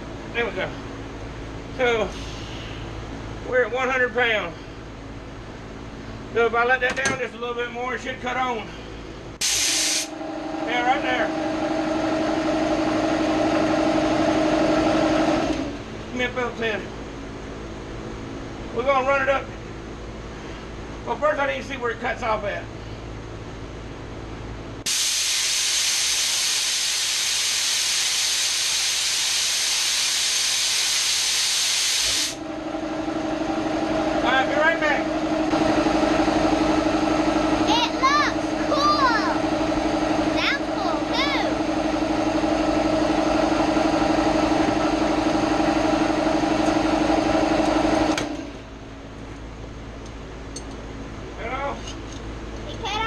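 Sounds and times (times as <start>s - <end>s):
compressor motor hum: 0.0s - 53.0s
compressed air hissing: 2.2s - 2.9s, 9.4s - 10.1s, 24.9s - 32.4s.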